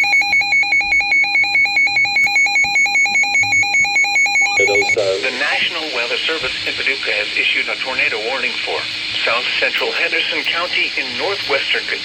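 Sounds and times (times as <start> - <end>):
weather radio alarm beeping: 3.3 - 5.5.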